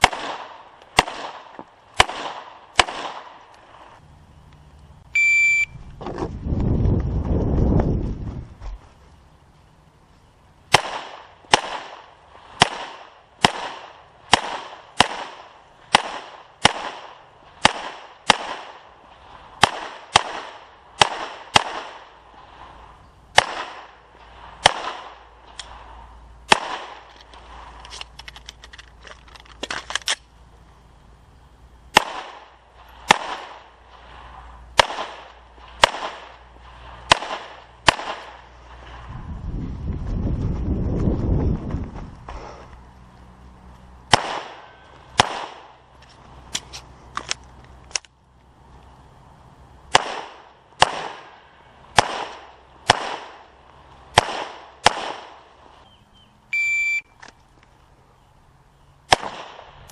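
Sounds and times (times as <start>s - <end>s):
pistol shots with echo: 0.0s - 3.4s, 10.7s - 18.9s, 19.6s - 22.1s, 26.5s - 27.1s, 31.9s - 33.7s, 34.8s - 36.4s, 37.1s - 38.4s, 44.1s - 45.8s, 49.9s - 53.4s, 54.1s - 55.4s, 59.1s - 59.7s.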